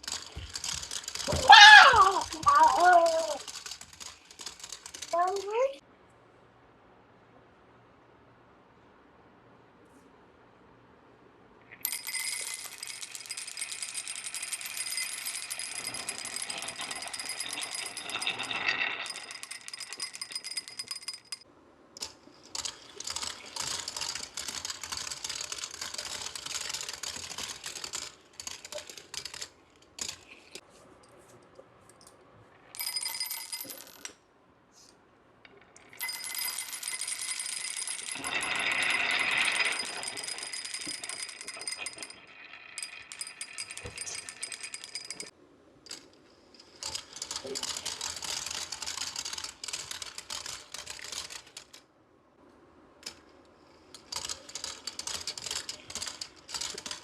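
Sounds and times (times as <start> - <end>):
marbles rattling down track: 0.0 - 5.7, 11.8 - 21.4, 22.0 - 30.4, 35.8 - 45.3, 46.7 - 51.8.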